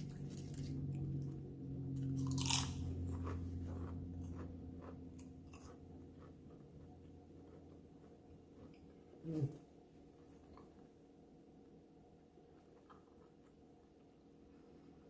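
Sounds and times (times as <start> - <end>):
crackly chewing: 0.0 - 11.0, 12.4 - 14.1
crunchy sandwich bite: 2.0 - 6.3.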